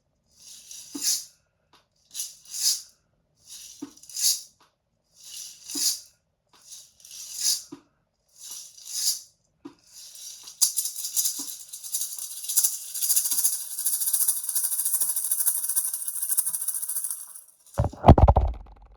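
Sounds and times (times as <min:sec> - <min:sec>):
maraca shaking: 0:10.0 - 0:18.9.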